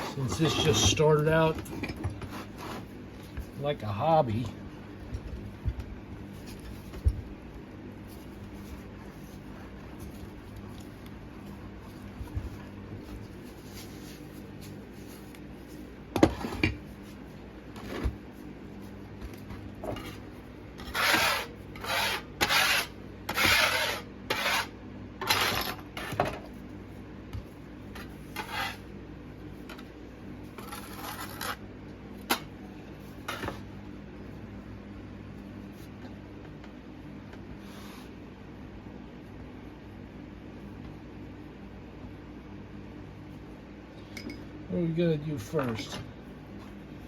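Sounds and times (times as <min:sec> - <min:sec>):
rubbing or scraping strokes: 0:20.0 - 0:26.2, 0:28.3 - 0:28.9.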